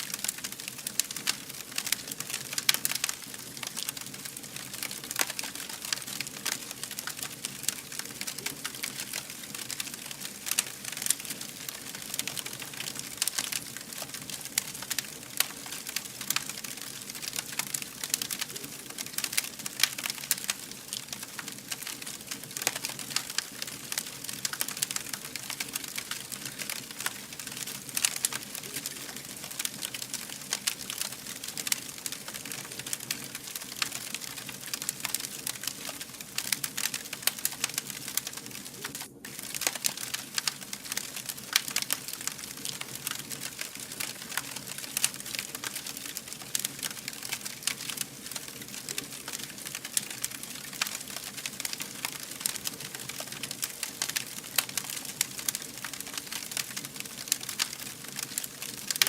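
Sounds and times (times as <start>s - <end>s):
campfire crackling and popping: 0.0s - 59.0s
steady fire hiss: 0.0s - 59.0s.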